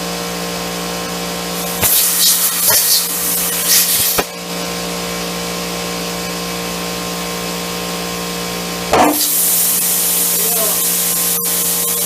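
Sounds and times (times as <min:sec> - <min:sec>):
air compressor motor running: 0:00.0 - 0:12.0
air hiss: 0:01.6 - 0:04.2, 0:09.2 - 0:12.0.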